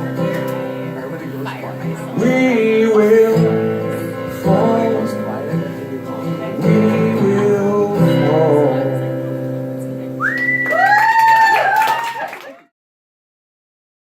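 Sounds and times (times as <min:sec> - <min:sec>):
acoustic guitar chord ringing: 0:00.0 - 0:10.2
audience cheering and whistling: 0:10.2 - 0:12.6.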